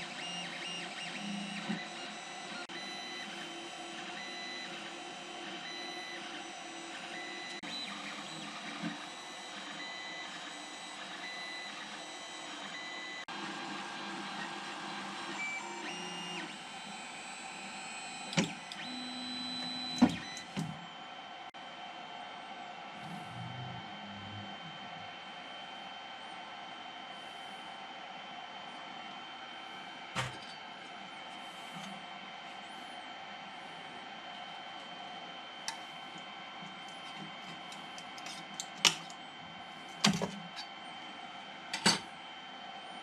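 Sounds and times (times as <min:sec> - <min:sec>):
printer stepper motors singing: 0:00.0 - 0:21.0.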